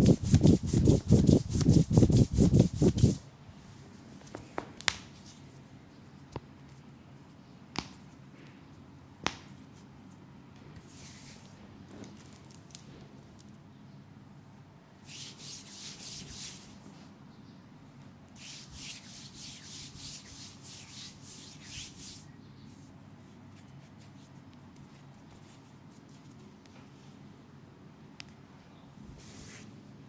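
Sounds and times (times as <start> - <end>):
hands rubbing oiled skin: 0.0 - 3.2, 15.1 - 16.8, 18.4 - 22.2.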